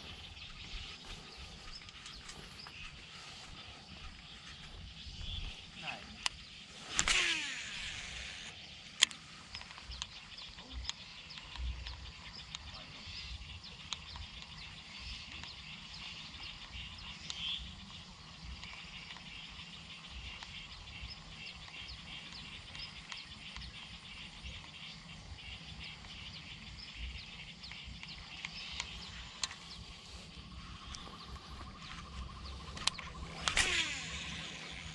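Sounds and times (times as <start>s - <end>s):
high-pitched chirping wildlife: 0.0s - 34.9s
short clicks: 6.2s - 10.1s, 32.8s - 34.9s.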